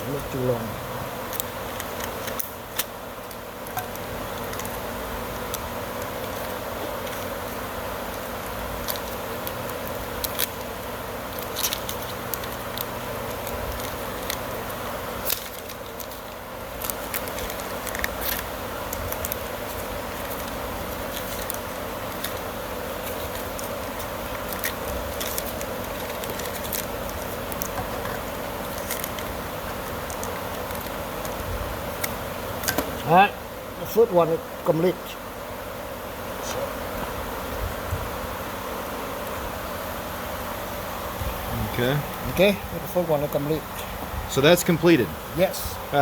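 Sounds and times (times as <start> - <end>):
steady background hum: 0.0 - 46.0
tape crackling off roll: 1.2 - 33.1.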